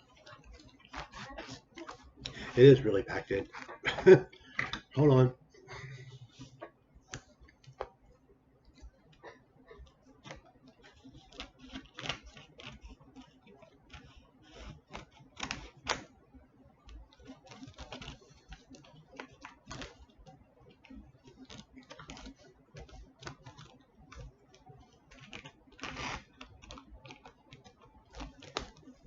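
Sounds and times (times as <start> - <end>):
cardboard and wrapping rustling: 0.0 - 5.2, 25.1 - 28.9.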